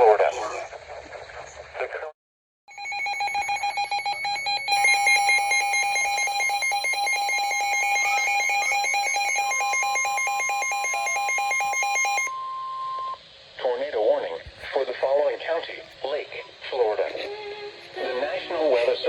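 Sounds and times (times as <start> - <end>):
rapid pulsing electronic beep: 2.7 - 12.4
steady warning tone: 2.7 - 13.2.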